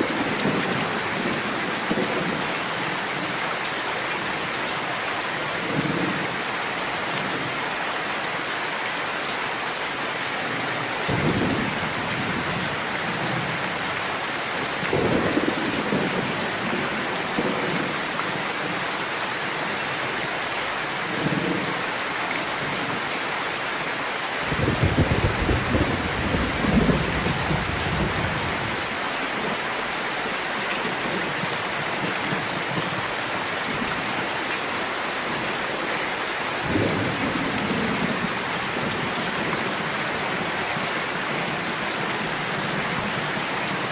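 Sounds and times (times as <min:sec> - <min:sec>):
heavy rain: 0:00.0 - 0:43.9
thunder rumbling: 0:11.1 - 0:13.7, 0:24.4 - 0:28.8.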